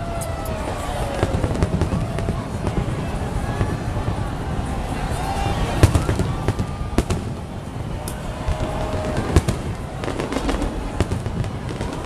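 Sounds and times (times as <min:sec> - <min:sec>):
fireworks bangs and crackles: 0:00.0 - 0:12.0.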